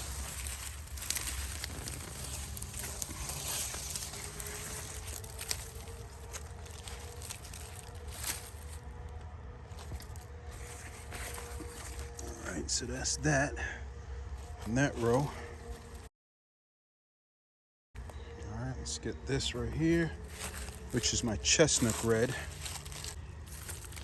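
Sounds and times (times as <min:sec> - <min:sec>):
low rumble: 0:00.0 - 0:14.8
dry stalks rustling and crackling: 0:00.0 - 0:16.1, 0:18.0 - 0:24.0
soil crumbling: 0:00.0 - 0:16.1, 0:18.0 - 0:24.0.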